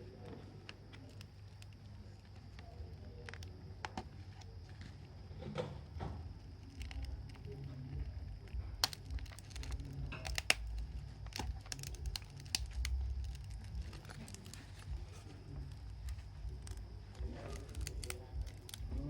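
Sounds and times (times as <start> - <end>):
phone back cover crackling: 6.4 - 19.0.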